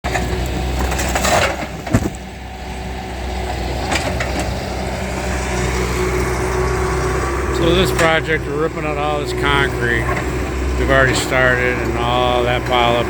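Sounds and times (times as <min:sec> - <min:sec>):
heavy machinery engine running: 0:00.0 - 0:13.0
sharp knocks: 0:01.7 - 0:02.2.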